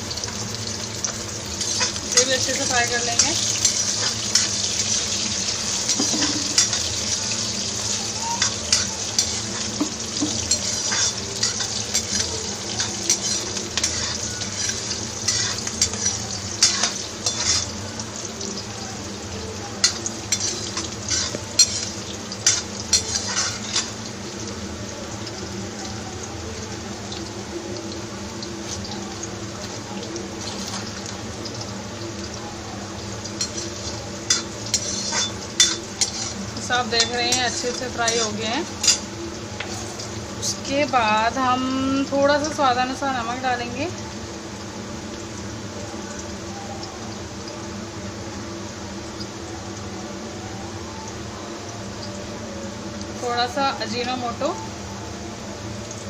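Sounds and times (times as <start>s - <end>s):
vegetables sizzling in oil: 0.0s - 56.0s
utensil scraping a pan: 33.6s - 36.4s.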